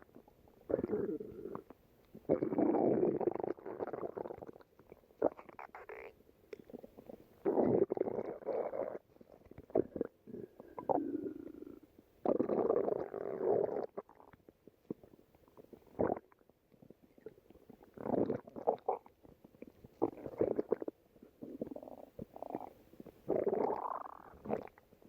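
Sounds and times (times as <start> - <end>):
stomach growling and gurgling: 0.0 - 25.0.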